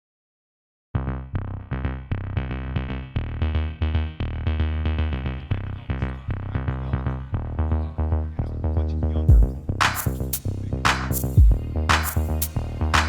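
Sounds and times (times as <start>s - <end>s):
synthesizer: 1.5s - 13.0s
drum-machine beat: 9.3s - 13.0s.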